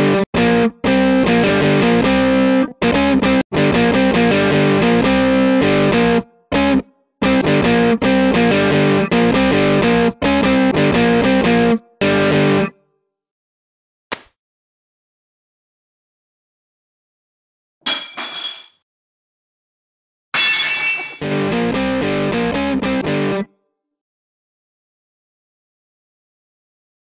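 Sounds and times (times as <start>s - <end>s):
distorted electric guitar music: 0.0s - 12.8s, 21.2s - 23.5s.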